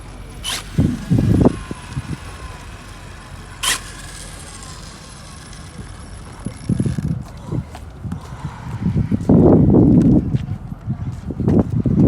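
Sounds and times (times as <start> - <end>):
sharp noisy burst: 0.0 - 6.9
electric motor whine: 0.0 - 8.0.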